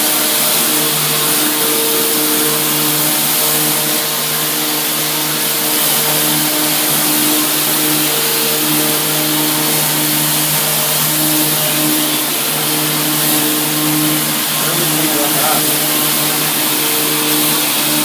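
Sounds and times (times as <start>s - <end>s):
cleaning machine hissing: 0.0s - 18.0s
higher machine tones: 11.7s - 18.0s.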